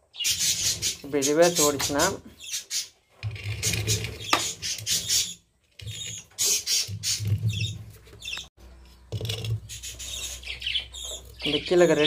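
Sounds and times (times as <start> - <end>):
creaking and scratchy rubbing: 3.1 - 11.5.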